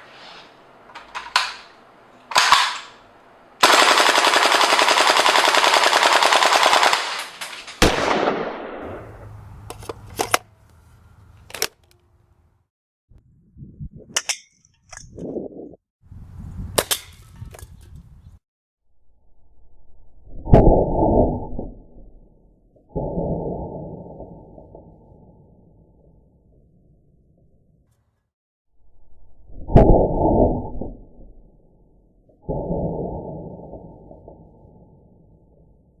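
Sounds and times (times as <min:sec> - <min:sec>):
airsoft rifle firing: 0:02.3 - 0:03.0, 0:03.6 - 0:09.3.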